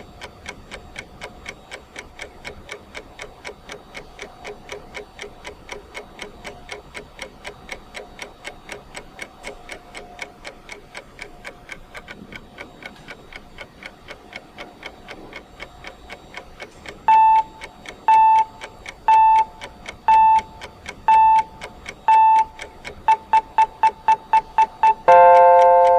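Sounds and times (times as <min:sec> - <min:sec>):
rapid clock ticking: 0:00.0 - 0:25.9
short electronic beeps: 0:17.1 - 0:25.9.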